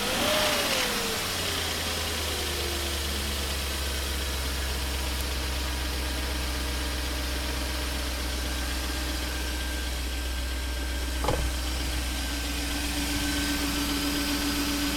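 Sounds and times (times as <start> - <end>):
car engine idling: 0.0 - 14.9
steady whine: 9.4 - 14.9
engine thump: 10.2 - 14.9.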